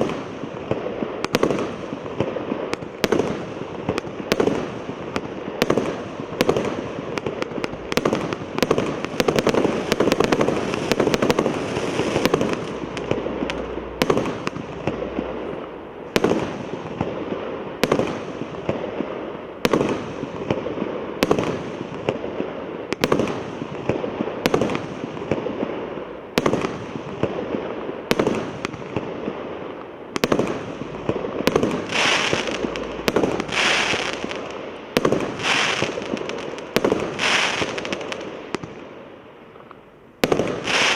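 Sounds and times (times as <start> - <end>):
fireworks bangs: 0.0 - 39.0, 40.2 - 40.9
fireworks crackle: 0.0 - 40.9
fireworks hissing: 7.3 - 15.6, 30.5 - 38.2, 40.6 - 40.9.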